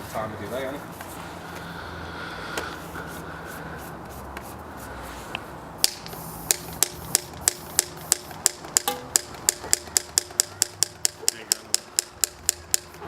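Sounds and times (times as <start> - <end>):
spark igniter clicking: 5.8 - 12.9.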